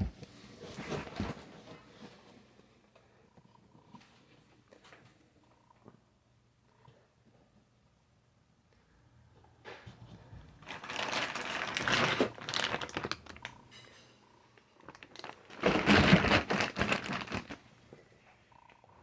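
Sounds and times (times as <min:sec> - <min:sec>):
packaging rustling and crackling: 0:10.6 - 0:13.7, 0:14.8 - 0:17.7.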